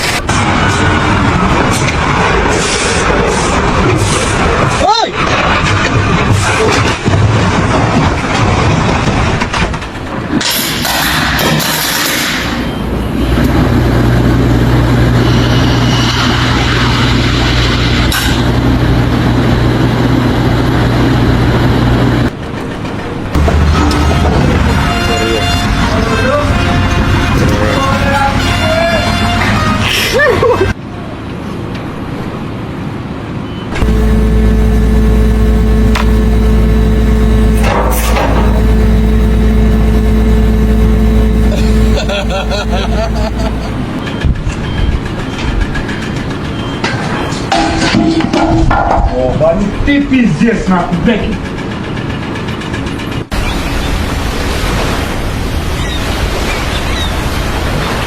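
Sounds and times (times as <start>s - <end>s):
engine humming: 23.4s - 25.0s, 33.7s - 44.0s
sharp clicks: 33.8s - 43.6s.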